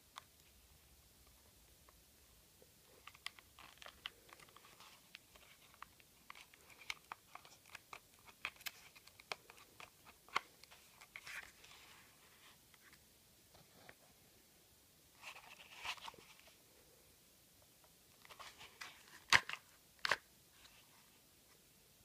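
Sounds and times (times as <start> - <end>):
paper crinkling: 2.9 - 13.0.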